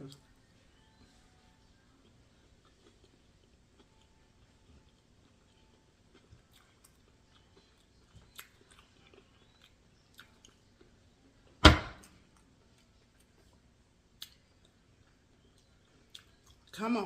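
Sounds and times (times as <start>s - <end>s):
chewing a sandwich: 0.1s - 16.9s
loud thump: 11.6s - 12.0s
soft mouth clicks: 14.2s - 14.8s.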